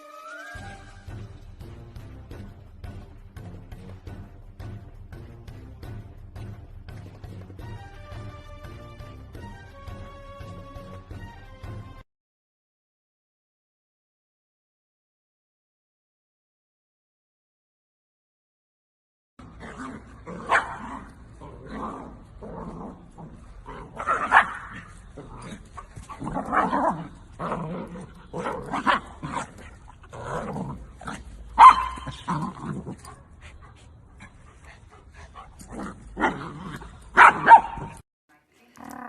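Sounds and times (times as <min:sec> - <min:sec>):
dog barking: 0:20.3 - 0:21.1, 0:23.9 - 0:24.9, 0:31.6 - 0:32.4, 0:37.1 - 0:38.0.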